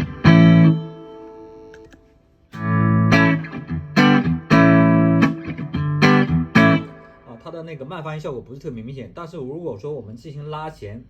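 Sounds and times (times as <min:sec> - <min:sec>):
electric guitar chords: 0:00.0 - 0:01.9, 0:02.5 - 0:07.3.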